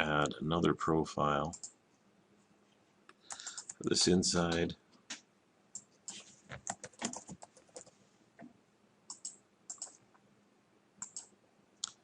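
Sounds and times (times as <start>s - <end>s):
mouse and keyboard clicking: 3.2s - 3.9s, 5.8s - 7.9s, 9.1s - 10.0s, 11.0s - 12.0s.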